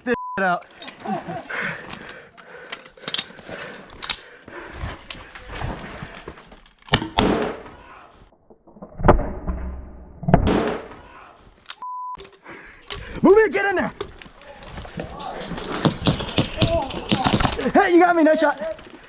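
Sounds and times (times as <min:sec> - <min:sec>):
gear clicks and rustling: 0:00.8 - 0:06.9, 0:14.0 - 0:19.0.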